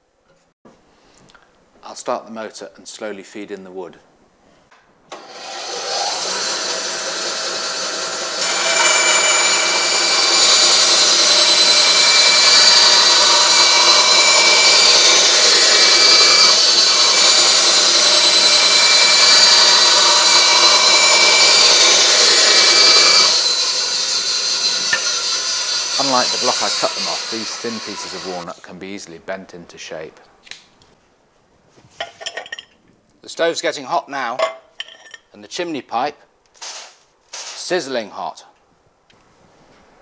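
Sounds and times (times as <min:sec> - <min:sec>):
bandsaw cutting wood: 0:05.1 - 0:28.5
bandsaw running: 0:05.1 - 0:28.5.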